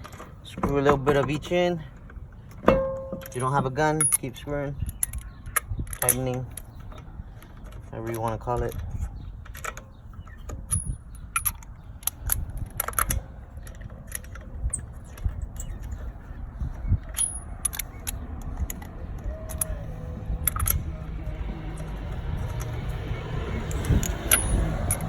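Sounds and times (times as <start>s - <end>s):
metallic clicks and clinks: 2.6s - 16.1s, 17.0s - 25.0s.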